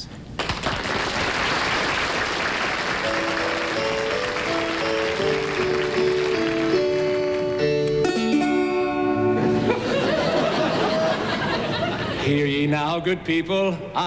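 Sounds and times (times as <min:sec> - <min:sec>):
audience applause: 0:00.4 - 0:07.9
plucked string melody: 0:03.0 - 0:11.1.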